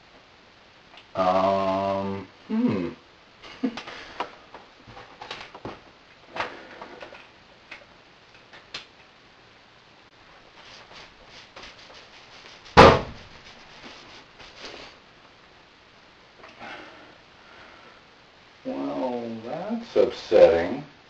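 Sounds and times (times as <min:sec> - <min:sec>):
loud knock: 0:12.8 - 0:13.3.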